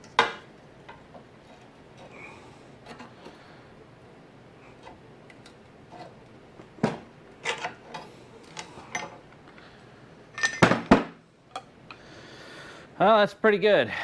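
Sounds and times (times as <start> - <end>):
hand tools clinking on metal: 7.4 - 9.2, 10.4 - 10.7.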